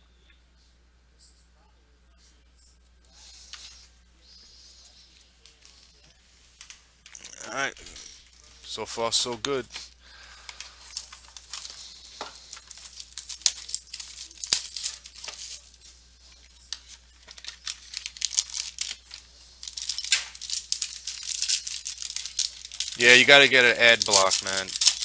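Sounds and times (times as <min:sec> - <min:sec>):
card pack wrappers crinkling: 0:06.6 - 0:25.0
cards clicking: 0:16.7 - 0:25.0.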